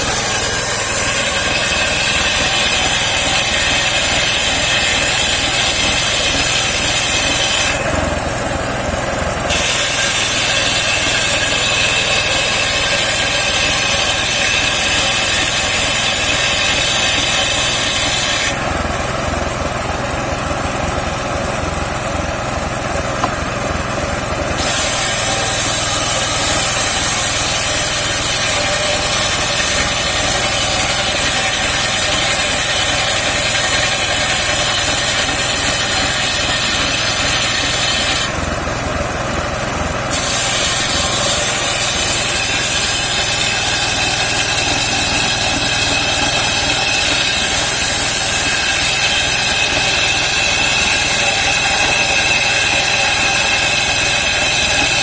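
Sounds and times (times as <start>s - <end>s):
saw blade whining through wood: 0.0s - 55.0s
sawmill engine running: 0.0s - 55.0s.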